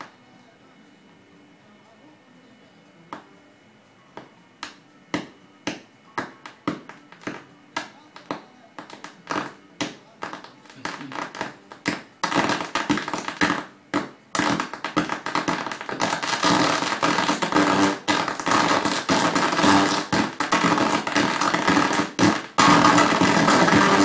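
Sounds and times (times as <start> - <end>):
distorted audio through speakers: 0.0 - 24.0.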